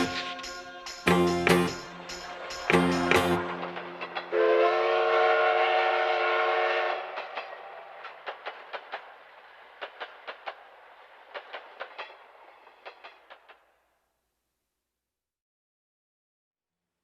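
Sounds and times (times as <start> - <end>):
train horn chord: 0.0 - 7.2
train wheels clicking on rail joints: 0.0 - 13.8.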